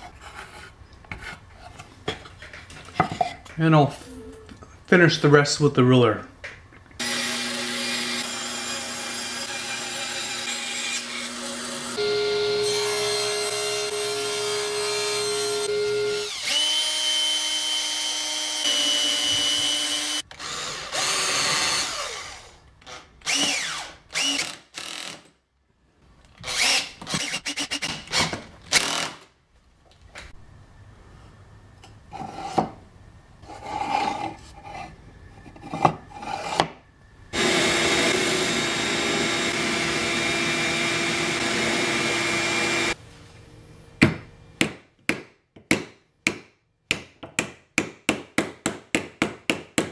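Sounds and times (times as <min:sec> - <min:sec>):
power tool cutting wood: 0:07.0 - 0:22.6, 0:37.4 - 0:43.0.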